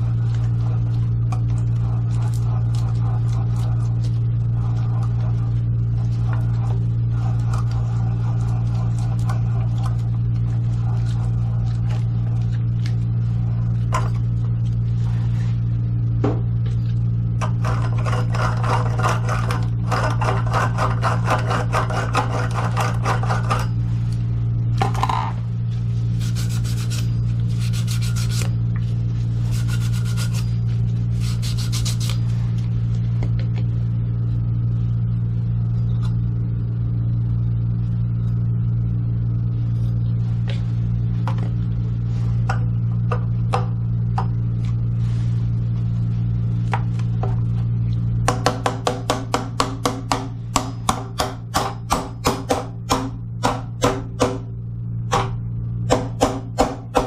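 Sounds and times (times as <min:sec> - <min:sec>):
rapid rubbing and scraping: 0:00.0 - 0:12.6, 0:29.2 - 0:32.3
steady low hum: 0:00.0 - 0:57.0.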